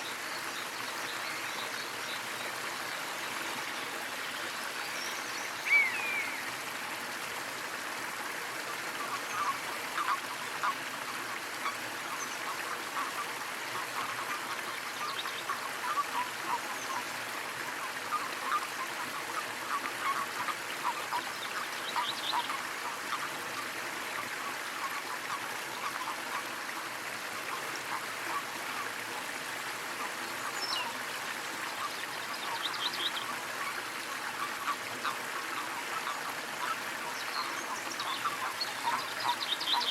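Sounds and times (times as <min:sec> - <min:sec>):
small waterfall splashing: 0:00.0 - 0:39.9
bird calls: 0:05.1 - 0:06.5, 0:31.8 - 0:39.9
trickling water plinks: 0:08.0 - 0:28.9.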